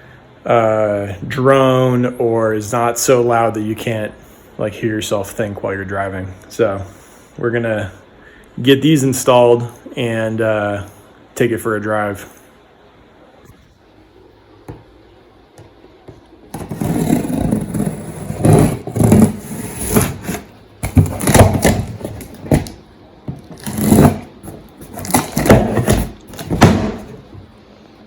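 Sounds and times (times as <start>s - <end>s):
packaging scraping and rustling: 16.6s - 27.2s.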